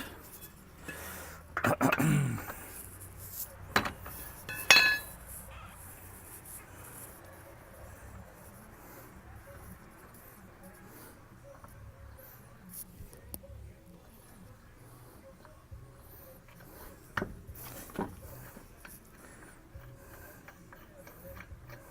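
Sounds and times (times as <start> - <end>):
faint handling noise: 6.1 - 21.9.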